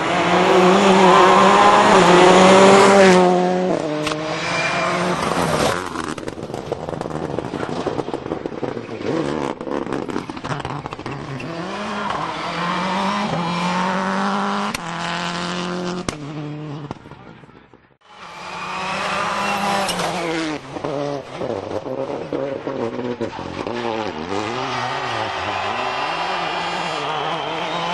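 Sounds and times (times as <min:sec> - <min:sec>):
rally car engines revving: 0:00.0 - 0:27.9.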